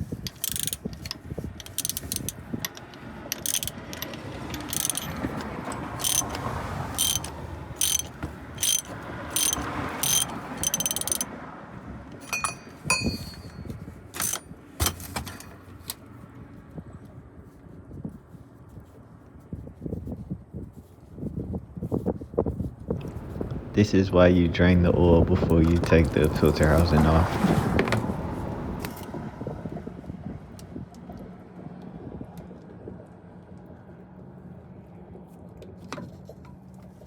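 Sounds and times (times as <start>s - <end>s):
socket ratchet clicking: 0.0s - 11.3s, 12.2s - 15.6s, 23.0s - 23.7s, 25.6s - 29.1s.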